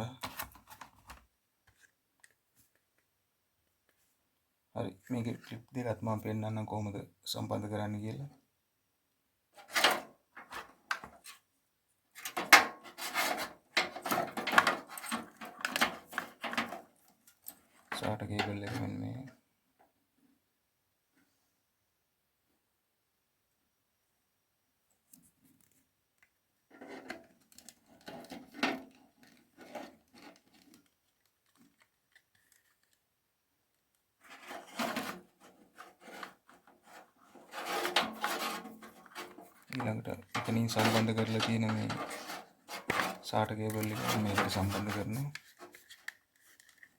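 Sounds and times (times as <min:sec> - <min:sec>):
rubbing and scraping handling sounds: 0:00.0 - 0:03.0, 0:04.8 - 0:06.2, 0:09.5 - 0:19.4, 0:26.6 - 0:33.2, 0:33.8 - 0:46.9.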